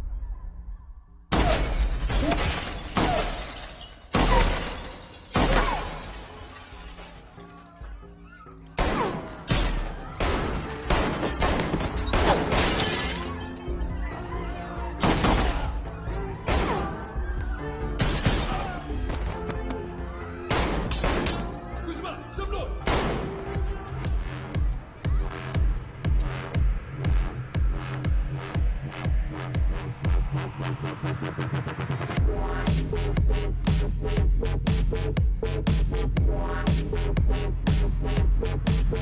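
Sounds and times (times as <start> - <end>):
gunshots: 1.3 - 7.0, 8.8 - 13.6, 15.0 - 15.8, 16.5 - 17.1, 20.5 - 21.7, 22.8 - 23.9
glass shattering: 1.3 - 8.0, 8.8 - 14.0, 15.0 - 16.9, 18.0 - 19.7, 20.5 - 23.0
film music score: 7.4 - 39.0.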